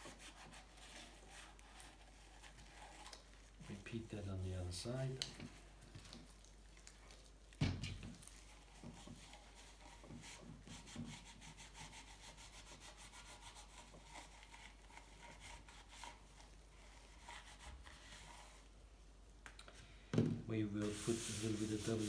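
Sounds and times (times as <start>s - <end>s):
hand rubbing bicycle frame: 20.8s - 22.0s.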